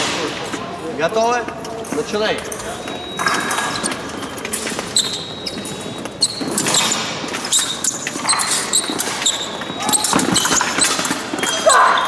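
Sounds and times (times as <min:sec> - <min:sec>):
shoe squeaks: 0:01.5 - 0:12.0.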